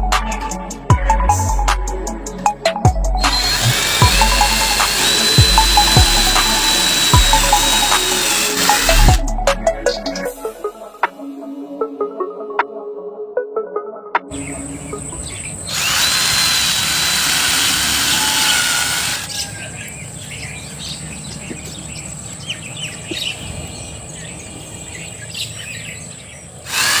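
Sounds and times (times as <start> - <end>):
power drill whining: 3.2 - 9.3, 15.4 - 20.0, 26.6 - 27.0.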